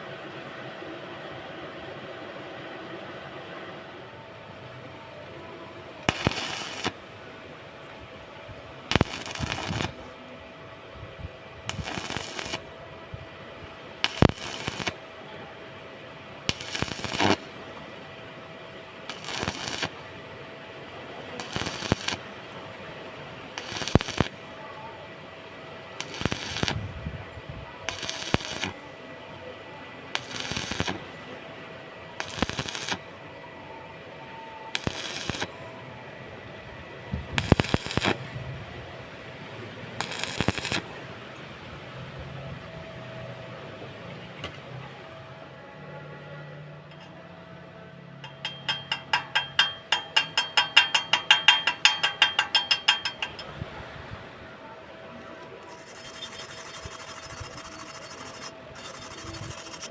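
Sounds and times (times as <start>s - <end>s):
welding arc crackling: 6.1s - 7.1s, 8.9s - 10.1s, 11.7s - 12.7s, 14.0s - 15.1s, 16.4s - 17.7s, 19.0s - 20.1s, 21.4s - 22.5s, 23.5s - 24.5s, 26.0s - 27.0s, 27.9s - 28.8s, 30.1s - 31.2s, 32.2s - 33.1s, 34.7s - 35.6s, 37.4s - 38.3s, 39.9s - 40.9s, 48.2s - 53.4s, 55.6s - 59.9s
chipping hammer tapping metal: 48.2s - 53.4s.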